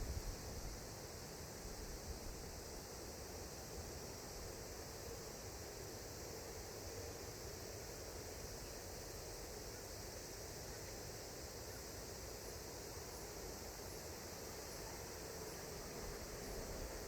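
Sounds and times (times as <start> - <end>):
wind rumble on microphone: 0.0 - 0.8.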